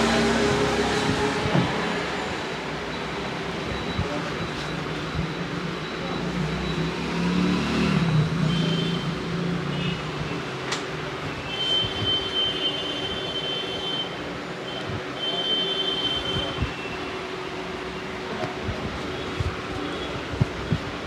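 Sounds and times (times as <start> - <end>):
passing road traffic: 5.7 - 11.3.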